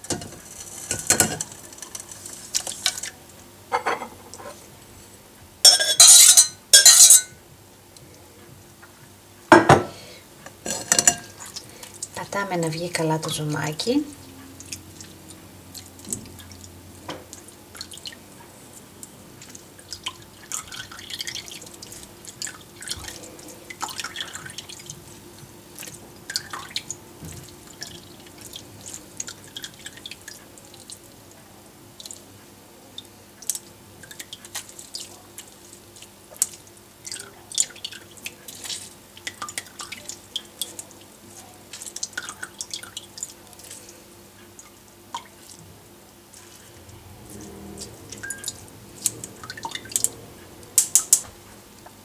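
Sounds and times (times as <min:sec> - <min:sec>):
syrup dripping through a strainer: 0:32.9 - 0:44.0, 0:46.3 - 0:51.2.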